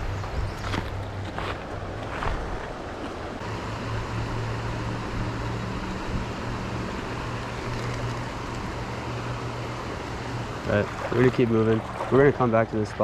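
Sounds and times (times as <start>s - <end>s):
creek water running: 0.0s - 13.0s
low hum: 0.0s - 13.0s.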